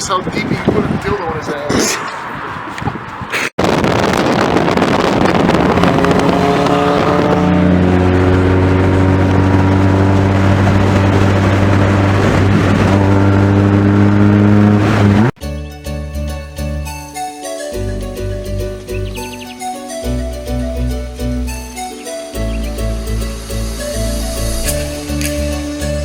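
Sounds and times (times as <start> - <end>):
rushing noise: 3.3 - 15.3, 22.7 - 25.2
car engine accelerating: 3.6 - 15.4, 22.4 - 26.0.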